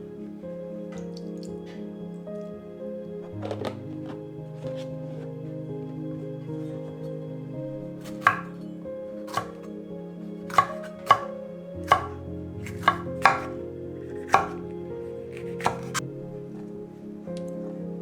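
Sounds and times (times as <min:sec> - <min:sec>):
soft background music: 0:00.0 - 0:18.0
knife chopping on cutting board: 0:08.0 - 0:08.6, 0:09.3 - 0:09.7, 0:10.5 - 0:11.3, 0:11.9 - 0:13.6, 0:14.2 - 0:14.6, 0:15.3 - 0:16.0.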